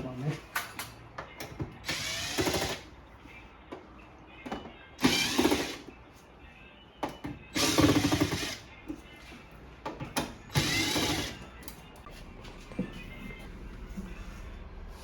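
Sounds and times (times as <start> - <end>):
power drill running: 10.5 - 11.4.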